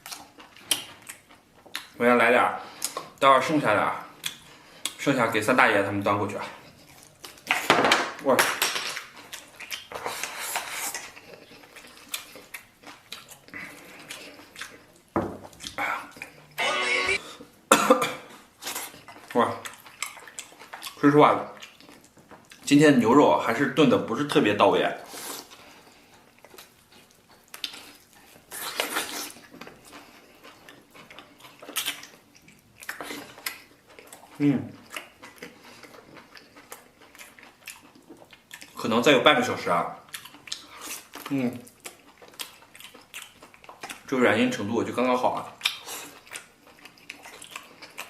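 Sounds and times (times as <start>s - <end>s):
chewing: 0.0s - 2.0s, 6.2s - 7.7s, 9.0s - 16.6s, 18.3s - 22.7s, 25.0s - 48.0s
mouth sounds of eating: 9.0s - 17.6s, 18.2s - 48.0s.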